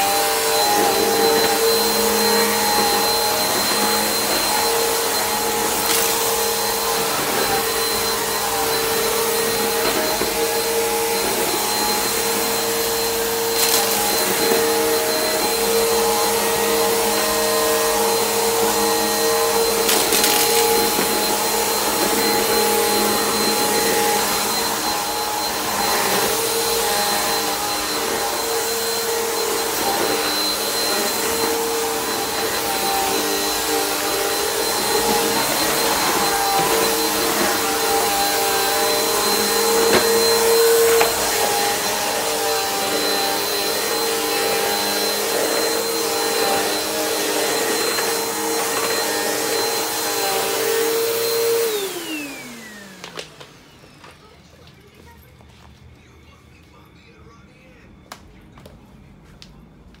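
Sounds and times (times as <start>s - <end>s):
vacuum cleaner motor whine: 0.0s - 57.4s.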